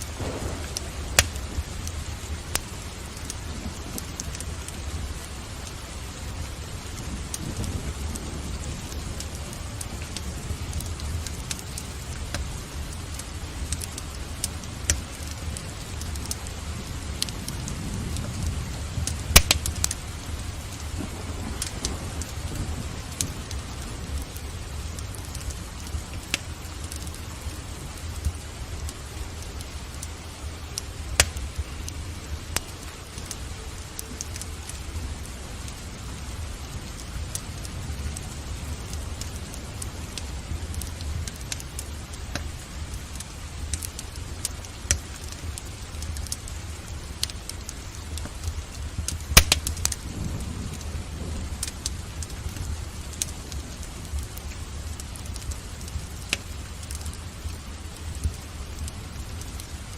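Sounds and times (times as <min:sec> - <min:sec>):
low rumble: 0:00.0 - 0:05.2
rain hissing: 0:00.0 - 0:59.9
wood fire crackling and popping: 0:00.0 - 0:59.9.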